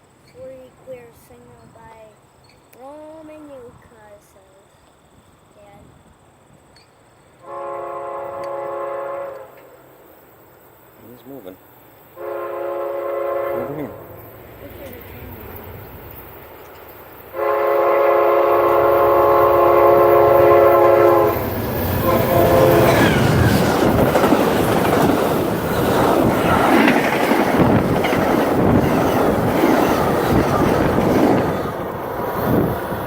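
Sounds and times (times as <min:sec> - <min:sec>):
train air horn: 0:07.4 - 0:09.9, 0:12.2 - 0:14.2, 0:17.3 - 0:24.0
train wheels rumbling on rails: 0:12.3 - 0:33.0.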